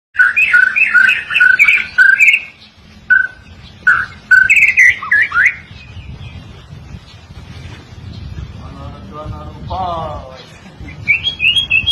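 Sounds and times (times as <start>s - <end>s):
bird singing whistled notes: 0.2s - 7.2s, 9.7s - 11.9s.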